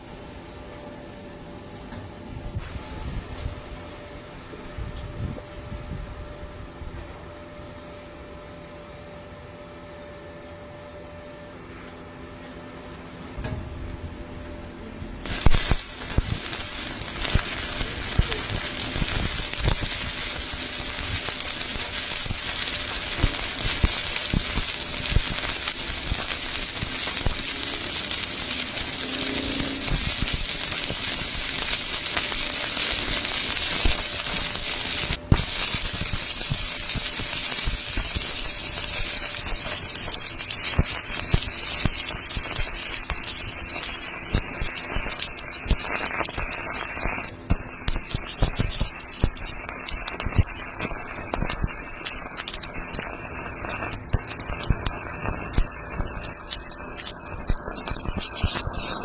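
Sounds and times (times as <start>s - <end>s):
welding arc crackling: 15.2s - 59.0s.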